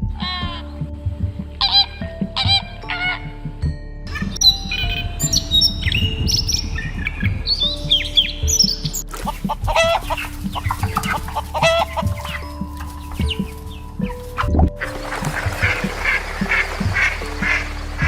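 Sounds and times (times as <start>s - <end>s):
background music: 0.0s - 18.0s
birds chirping: 4.4s - 18.0s.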